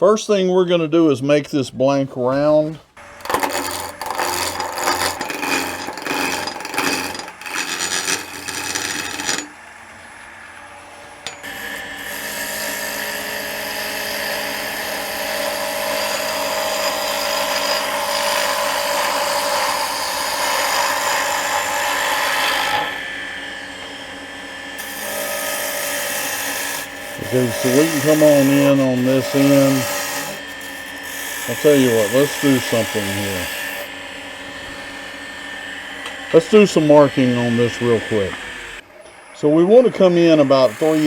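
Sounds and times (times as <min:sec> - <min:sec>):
lathe motor hum: 0:03.0 - 0:14.5, 0:23.0 - 0:38.8
turning tool cutting spinning wood: 0:03.0 - 0:41.0.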